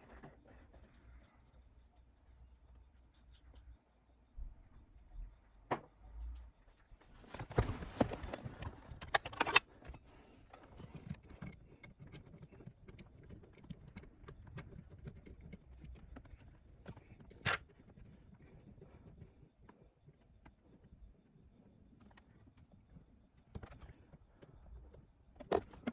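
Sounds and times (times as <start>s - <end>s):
handling clicks and rattles: 7.2s - 19.4s.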